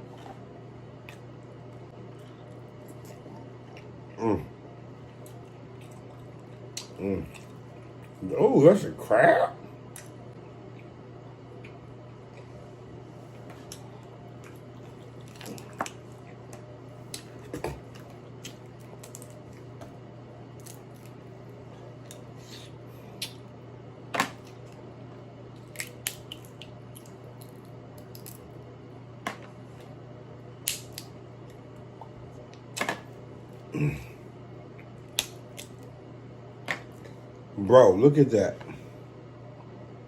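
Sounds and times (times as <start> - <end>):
crab shell cracking: 18.4 - 19.5, 25.6 - 28.4, 30.6 - 31.2, 35.1 - 35.9.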